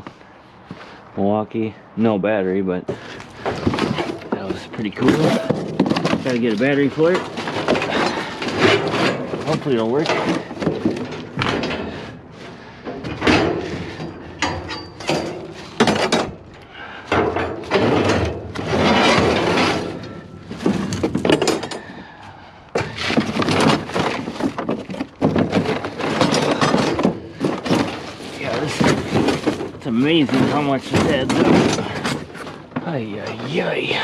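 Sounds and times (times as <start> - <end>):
scrap items clattering and scraping: 2.9 - 22.1, 22.7 - 34.0.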